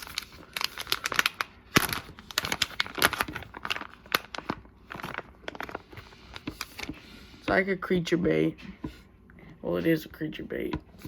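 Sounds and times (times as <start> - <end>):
plastic packaging crinkling: 0.0 - 7.6.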